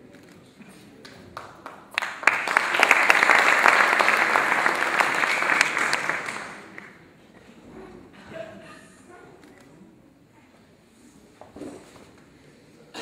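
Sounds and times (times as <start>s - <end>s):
audience applauding: 1.4s - 7.0s.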